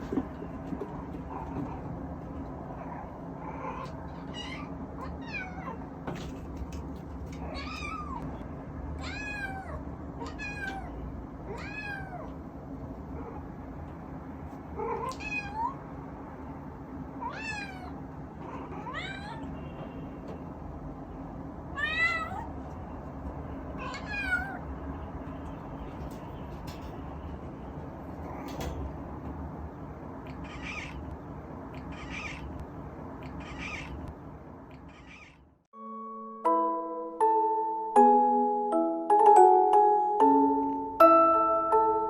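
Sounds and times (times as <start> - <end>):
kitten meowing: 3.5 - 5.8, 9.0 - 10.9, 11.5 - 12.3, 14.8 - 15.8, 17.2 - 18.0, 18.6 - 19.5, 21.8 - 22.5, 23.8 - 24.6, 30.3 - 31.1, 31.8 - 32.6, 33.3 - 34.1, 34.8 - 35.4.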